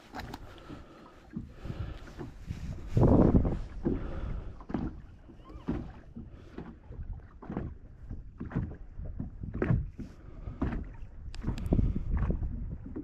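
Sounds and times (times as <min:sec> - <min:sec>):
low wind rumble: 0:00.0 - 0:13.0
water slapping boat hull: 0:00.0 - 0:13.0.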